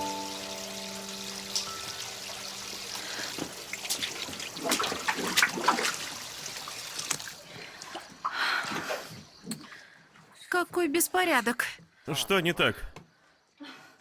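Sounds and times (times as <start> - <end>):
water running from tap: 0.0 - 7.5
water splashing: 1.4 - 9.1.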